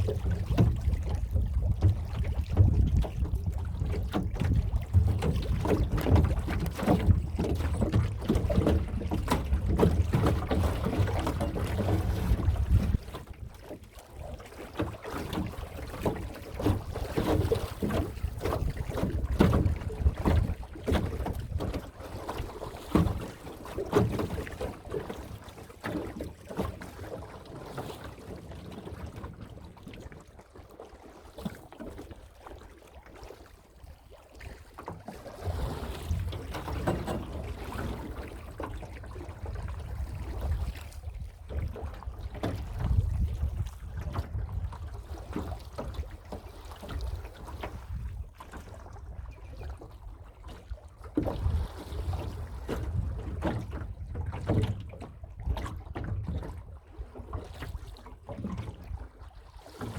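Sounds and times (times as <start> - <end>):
wind buffeting microphone: 0.0 - 13.6, 16.6 - 21.8, 36.1 - 46.0, 47.8 - 48.4
knocks on boat: 0.0 - 13.8, 14.7 - 27.0, 34.8 - 48.7, 51.1 - 56.6
water sounds: 0.0 - 59.9.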